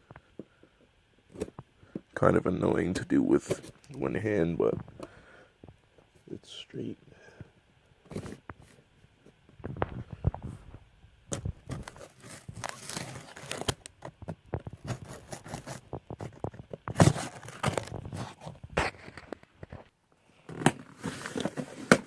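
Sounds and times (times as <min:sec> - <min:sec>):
packaging crinkling and tearing: 0:11.3 - 0:19.5.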